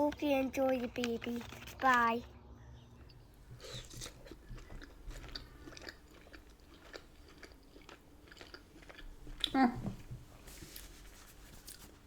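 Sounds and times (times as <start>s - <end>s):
person chewing food: 3.0s - 12.0s.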